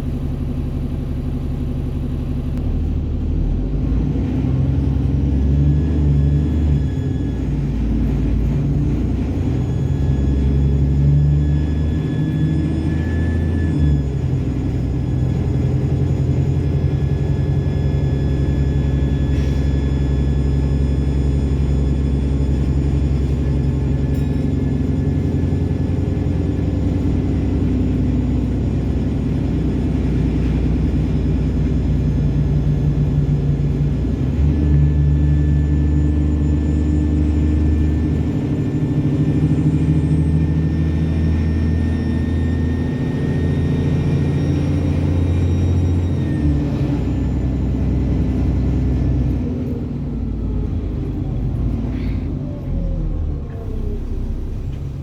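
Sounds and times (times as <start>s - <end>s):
bus diesel engine rumble: 0.0s - 55.0s
high turbo whine: 0.0s - 55.0s.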